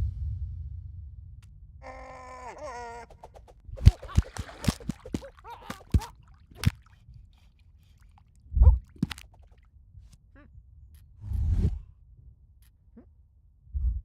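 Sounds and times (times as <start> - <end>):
heavy low thump: 0.0 - 1.8.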